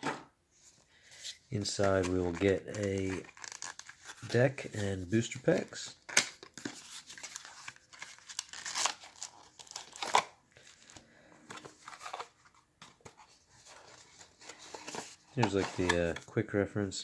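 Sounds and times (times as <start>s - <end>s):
packaging rustling and crinkling: 1.2s - 16.2s
packaging snapping: 1.8s - 4.3s.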